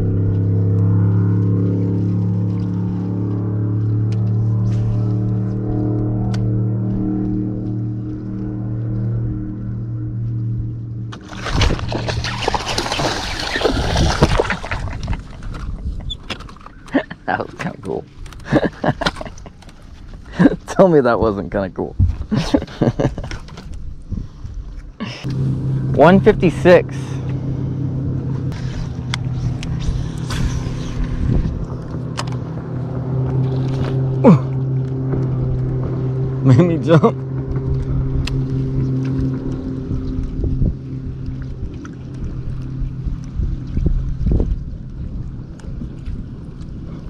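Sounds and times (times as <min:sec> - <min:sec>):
motor hum: 0:00.0 - 0:20.5, 0:22.0 - 0:47.0
fish splashing at water surface: 0:11.1 - 0:15.2.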